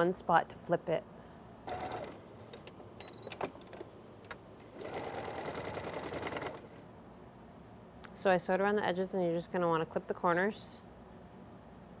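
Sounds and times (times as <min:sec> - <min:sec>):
sewing machine stitching: 0:01.7 - 0:03.8, 0:04.6 - 0:06.8.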